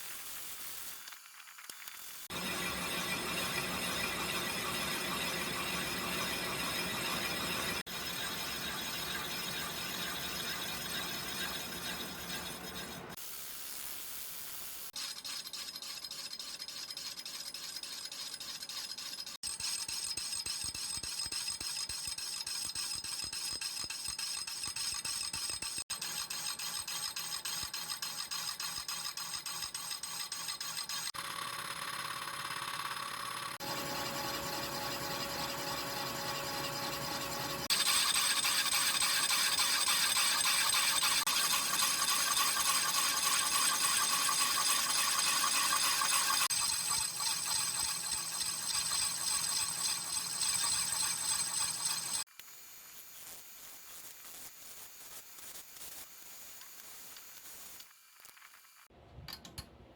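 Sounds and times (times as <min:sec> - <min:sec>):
machine tool cutting metal: 0:02.3 - 0:13.2, 0:15.0 - 0:52.2
whining squeal: 0:02.3 - 0:13.2, 0:33.6 - 0:52.2.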